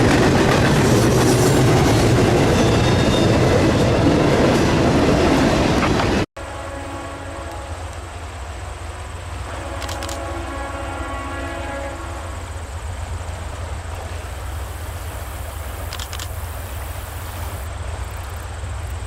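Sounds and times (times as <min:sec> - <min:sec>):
locomotive air horn chord: 0:06.4 - 0:08.1, 0:09.4 - 0:12.6.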